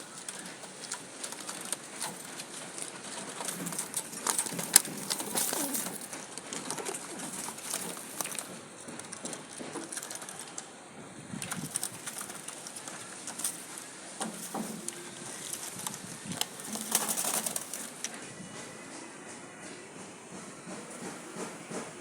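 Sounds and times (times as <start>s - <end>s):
rustling: 0.0s - 10.8s, 11.4s - 18.2s
pigeons cooing: 0.0s - 18.2s.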